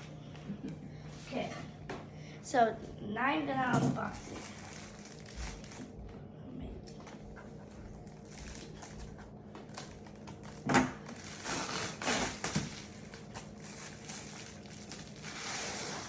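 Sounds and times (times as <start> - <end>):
packaging rustling and crinkling: 4.2 - 6.0, 8.2 - 9.0, 9.6 - 16.0.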